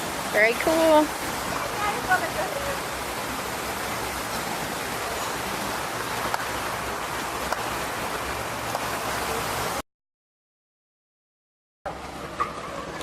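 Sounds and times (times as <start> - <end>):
splashing fountain water: 0.0 - 9.8.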